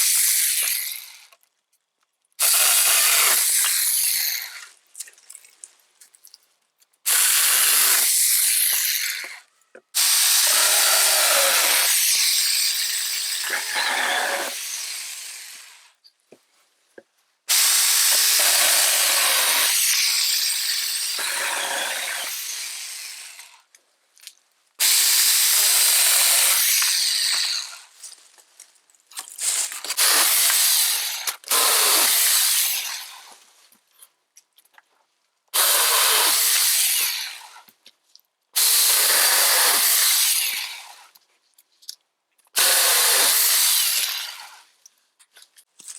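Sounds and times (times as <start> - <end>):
mini chainsaw cutting wood: 0.0 - 1.4, 2.4 - 4.7, 7.1 - 16.0, 17.5 - 23.7, 24.8 - 28.0, 29.3 - 33.5, 35.6 - 37.7, 38.6 - 41.2, 42.6 - 44.7.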